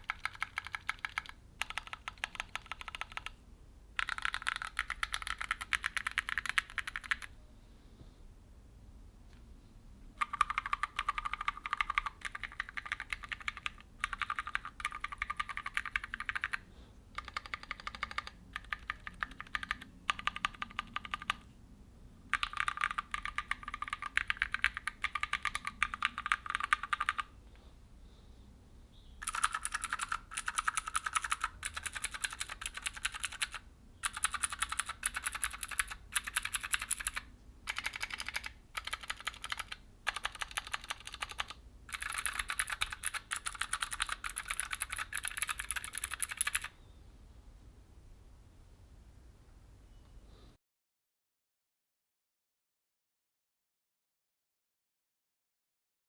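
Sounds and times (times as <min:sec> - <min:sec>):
typing on mechanical keys: 0:00.0 - 0:03.4, 0:04.0 - 0:07.3, 0:10.2 - 0:21.5, 0:22.3 - 0:27.3, 0:29.2 - 0:46.7
sharp clicky keystrokes: 0:04.0 - 0:07.3, 0:10.2 - 0:16.6, 0:22.3 - 0:27.3, 0:29.2 - 0:46.7.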